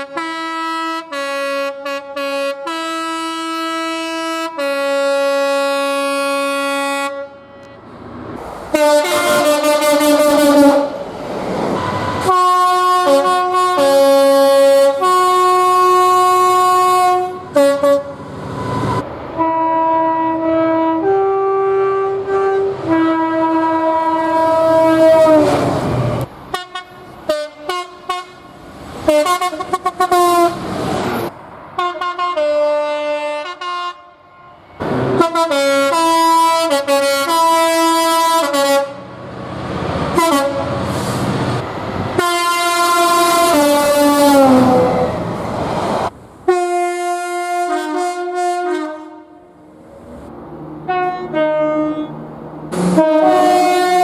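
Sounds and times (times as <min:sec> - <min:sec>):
train horn blasts: 0:00.0 - 0:07.9, 0:08.7 - 0:11.0, 0:11.8 - 0:28.5, 0:29.1 - 0:30.6, 0:31.8 - 0:39.1, 0:40.1 - 0:40.8, 0:42.2 - 0:45.2, 0:46.5 - 0:49.6, 0:50.8 - 0:54.0
trains rushing past: 0:07.5 - 0:14.4, 0:16.1 - 0:32.9, 0:34.1 - 0:36.7, 0:37.4 - 0:46.9, 0:49.4 - 0:54.0.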